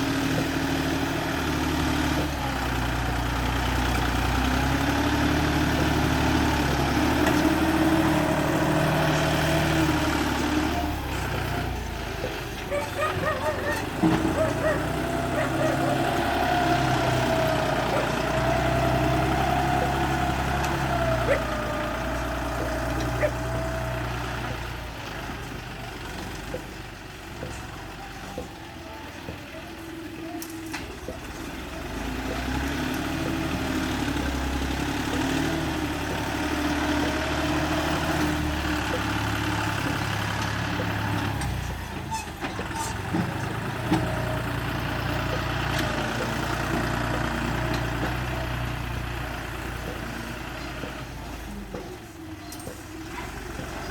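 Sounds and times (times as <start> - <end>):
bulldozer diesel engine: 0.0 - 53.9.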